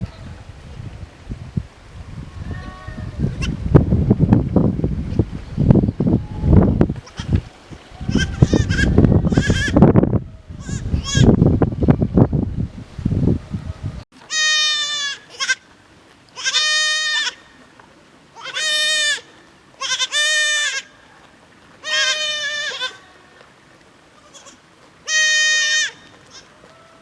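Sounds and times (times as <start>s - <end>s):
goat kids bleating: 8.0s - 9.8s, 10.6s - 11.3s, 14.3s - 15.6s, 16.4s - 17.4s, 18.4s - 20.9s, 21.8s - 23.2s, 24.2s - 26.5s.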